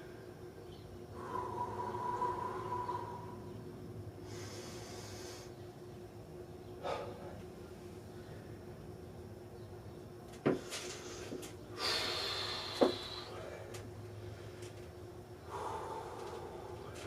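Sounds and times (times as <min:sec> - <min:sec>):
person breathing hard: 0:01.2 - 0:03.6, 0:04.2 - 0:05.6, 0:06.8 - 0:07.4, 0:11.0 - 0:14.6, 0:15.4 - 0:17.0.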